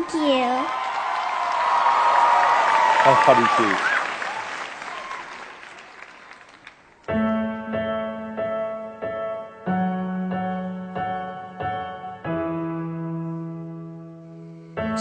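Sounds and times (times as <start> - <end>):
applause: 0.0 - 7.1
piano chords: 7.1 - 15.0.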